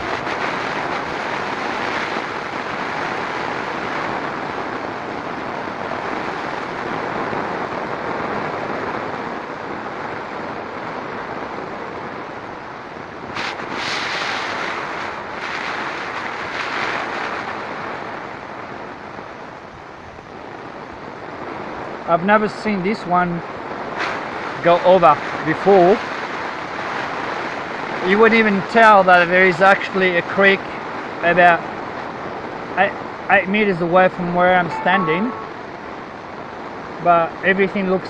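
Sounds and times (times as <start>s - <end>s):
heavy rain: 0.0s - 38.0s.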